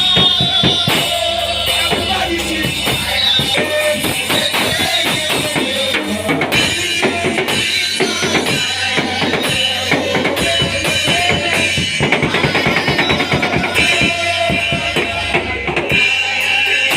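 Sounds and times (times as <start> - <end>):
drum kit beat: 0.0 - 16.9
live worship band music: 0.0 - 16.9.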